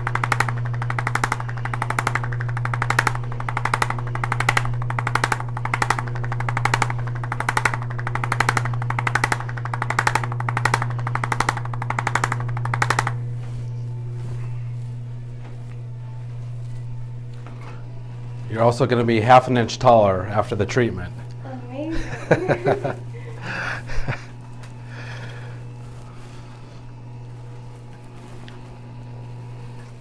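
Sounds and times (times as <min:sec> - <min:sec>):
percussion massager hammering: 0:00.0 - 0:13.5.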